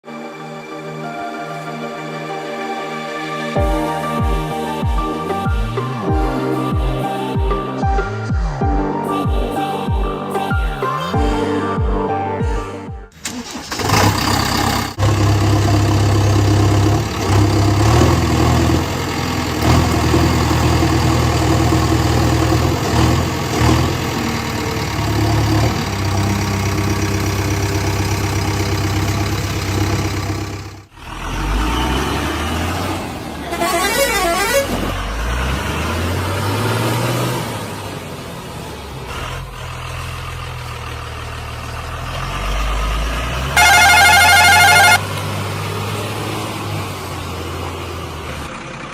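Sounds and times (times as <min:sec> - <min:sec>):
heavy vehicle engines droning: 0:13.8 - 0:48.9
warbling horn-like tone: 0:43.6 - 0:45.0.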